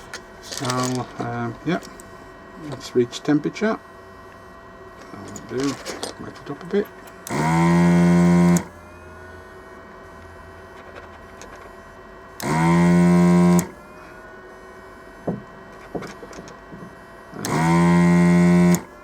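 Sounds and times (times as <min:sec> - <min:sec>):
small electric motor buzzing: 0:06.9 - 0:19.0.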